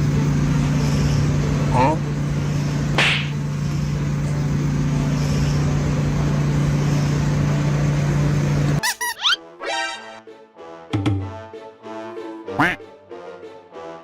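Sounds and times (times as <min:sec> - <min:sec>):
low mechanical hum: 0:00.0 - 0:09.1.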